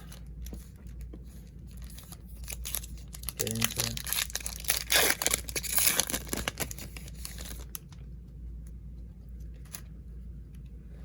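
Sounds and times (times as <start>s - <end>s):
plastic wrapper crinkling and tearing: 1.6s - 8.0s.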